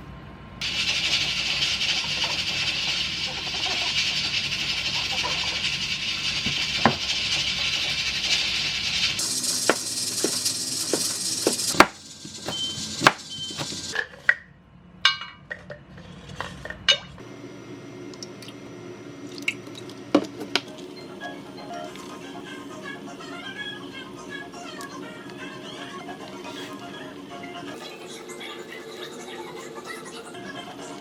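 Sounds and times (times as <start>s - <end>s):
steady hiss: 0.6s - 14.0s.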